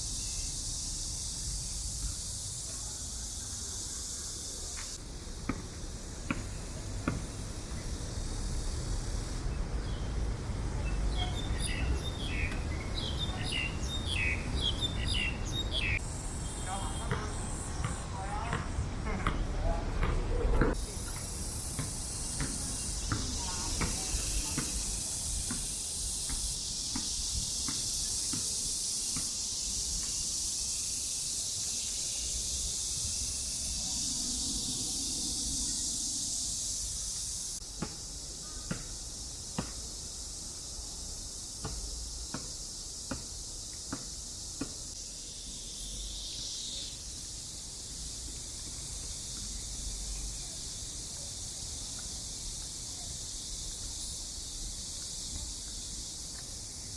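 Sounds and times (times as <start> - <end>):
insects buzzing: 0.0 - 56.9.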